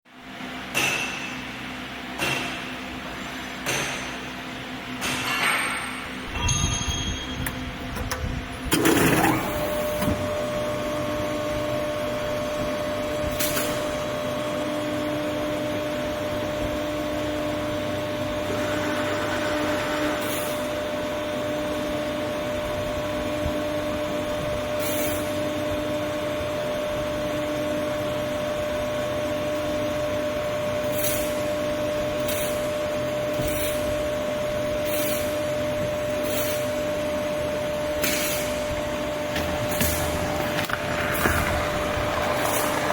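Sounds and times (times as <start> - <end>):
hydraulic power unit humming: 0.3 - 42.9.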